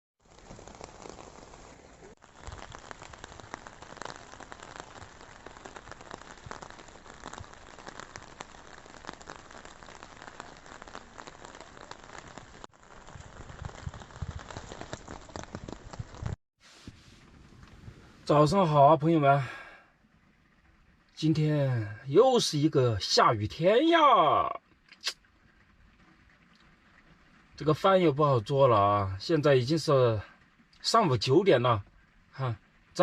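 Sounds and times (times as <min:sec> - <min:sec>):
rain drops striking a surface: 0:00.2 - 0:33.0.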